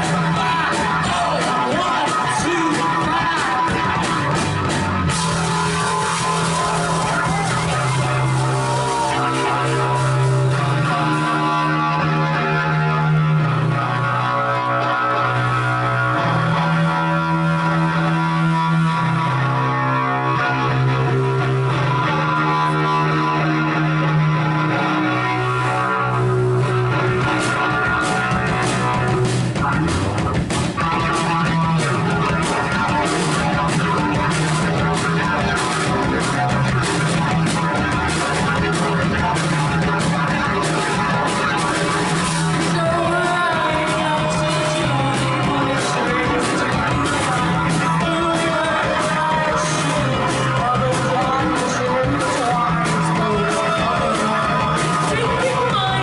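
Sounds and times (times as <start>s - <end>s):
drums with cymbal hits: 0.0s - 12.3s, 26.3s - 56.0s
held guitar chords: 0.0s - 56.0s
rock band playing: 0.0s - 56.0s.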